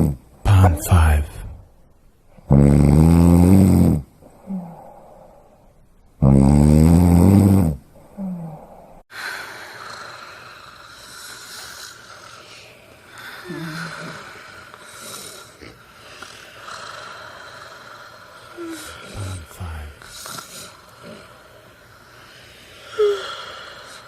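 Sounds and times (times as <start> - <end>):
person snoring: 0.0 - 1.7, 2.4 - 5.6, 6.2 - 24.0
quiet breathing: 4.1 - 6.2, 7.7 - 24.0
steady hiss: 7.7 - 24.0.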